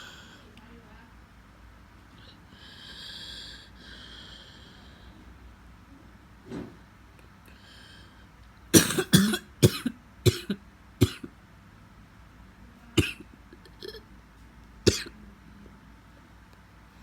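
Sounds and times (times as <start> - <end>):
person coughing: 8.8 - 11.3, 13.0 - 14.0, 14.9 - 15.1.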